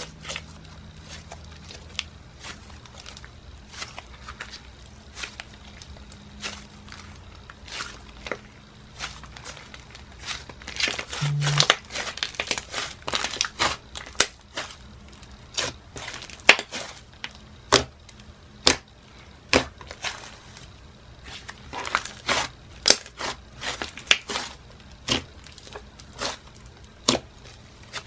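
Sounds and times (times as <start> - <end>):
slime crackling and popping: 15.5 - 16.9.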